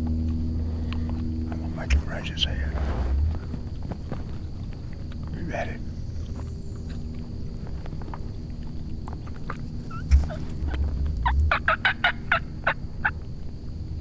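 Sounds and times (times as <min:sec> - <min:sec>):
wild turkey gobbling: 0:00.8 - 0:03.5, 0:09.5 - 0:13.2
low thump: 0:10.2 - 0:11.5.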